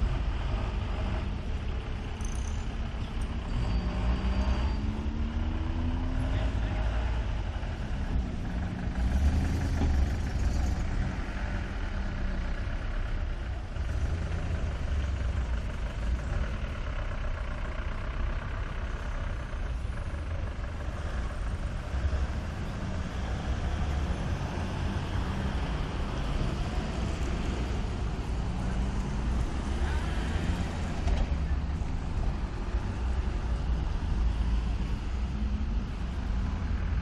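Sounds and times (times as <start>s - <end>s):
street traffic rumble: 0.0s - 37.0s.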